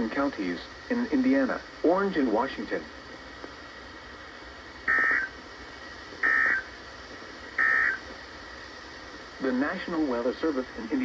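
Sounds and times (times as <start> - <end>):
digital data tone bursts: 4.8 - 5.4, 6.2 - 6.7, 7.6 - 8.0.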